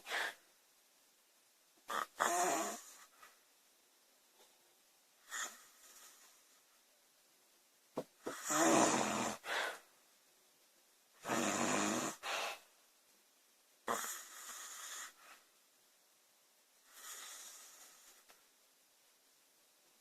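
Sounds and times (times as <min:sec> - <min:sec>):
woman snoring: 0:01.9 - 0:03.1, 0:08.2 - 0:09.8, 0:11.2 - 0:12.6, 0:13.8 - 0:15.2.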